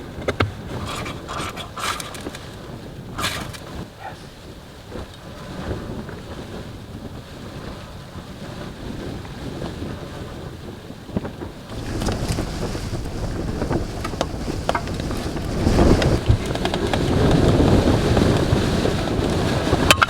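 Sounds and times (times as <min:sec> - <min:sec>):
blizzard wind buffeting microphone: 0:00.0 - 0:20.0
handling knocks and clicks: 0:00.1 - 0:03.7, 0:13.9 - 0:17.2.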